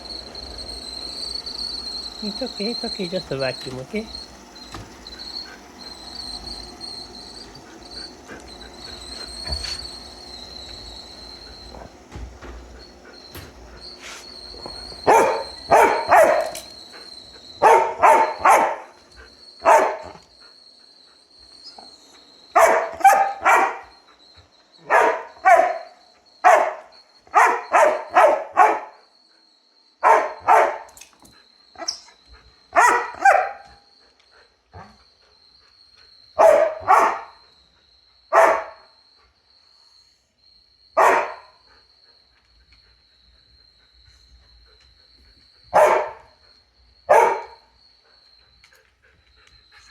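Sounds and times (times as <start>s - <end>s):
robot vacuum cleaner whine: 0.0s - 38.3s
dog barking: 14.8s - 16.8s, 17.6s - 19.0s, 19.6s - 20.3s, 22.5s - 23.9s, 24.8s - 29.0s, 30.0s - 31.0s, 32.7s - 33.8s, 34.8s - 35.0s, 36.4s - 37.4s, 38.3s - 38.9s, 41.0s - 41.6s, 45.7s - 46.4s, 47.1s - 47.7s.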